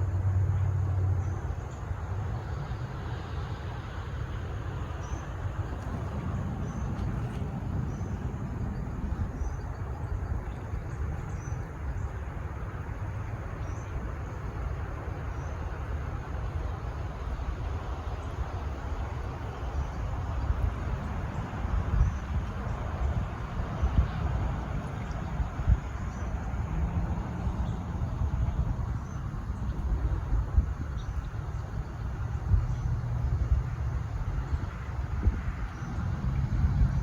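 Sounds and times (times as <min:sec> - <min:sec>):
low rumble: 0:05.4 - 0:11.8.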